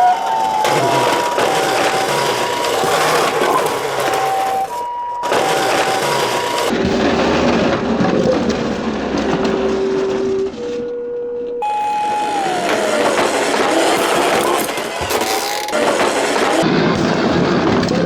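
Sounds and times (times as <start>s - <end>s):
toy siren: 0.0s - 6.7s, 10.6s - 15.8s
noisy clatter: 0.0s - 11.6s, 12.4s - 18.0s.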